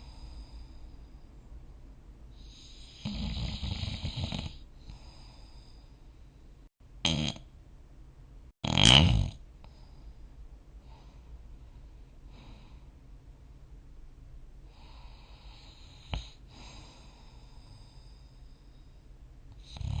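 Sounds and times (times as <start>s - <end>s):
soft breaths: 0.0s - 1.7s, 4.6s - 6.7s, 9.6s - 13.2s, 14.6s - 20.0s
person snorting: 7.1s - 7.4s, 8.6s - 9.4s.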